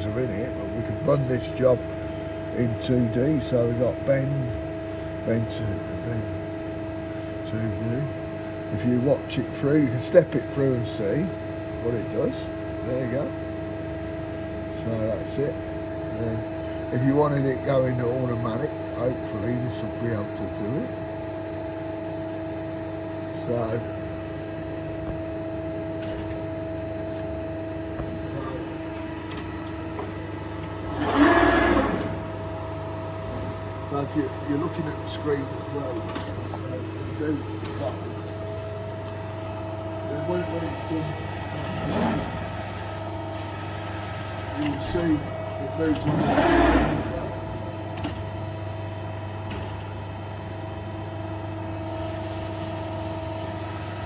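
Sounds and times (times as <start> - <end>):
press brake motor hum: 15.6 - 54.0
surge of machine noise: 28.2 - 32.7, 40.1 - 47.9.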